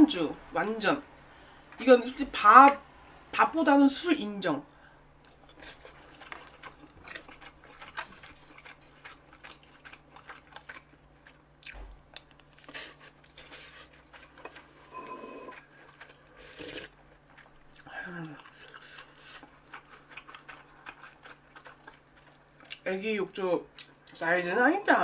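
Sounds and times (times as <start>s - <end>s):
chewing with wet clicks and smacks: 5.2s - 14.9s, 15.5s - 23.0s, 23.7s - 24.2s.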